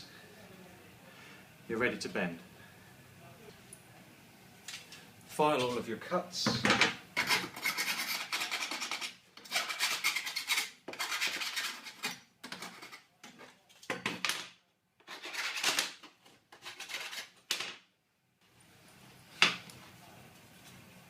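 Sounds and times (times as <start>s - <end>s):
hand file rasping on steel: 7.2s - 13.0s.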